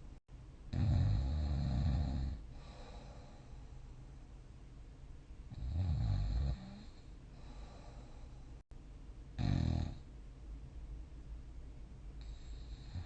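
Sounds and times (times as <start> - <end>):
person snoring: 0.7 - 3.4, 5.5 - 8.0, 9.4 - 10.0
quiet breathing: 0.8 - 4.4, 5.4 - 8.7, 12.1 - 13.0.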